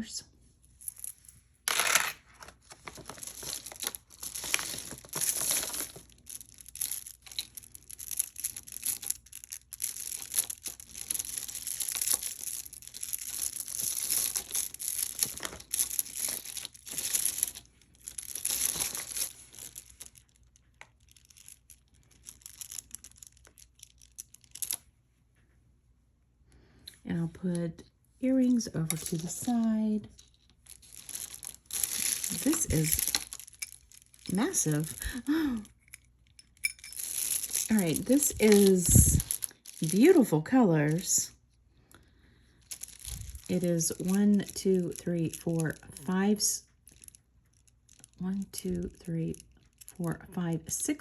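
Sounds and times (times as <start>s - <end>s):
packaging crinkling and rustling: 1.7s - 24.8s, 28.9s - 40.2s, 42.6s - 44.9s.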